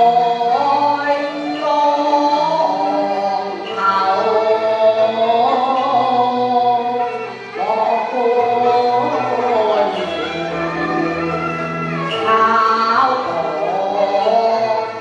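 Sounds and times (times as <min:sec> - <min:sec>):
instrumental accompaniment: 0:00.0 - 0:15.0
operatic singing: 0:00.0 - 0:15.0.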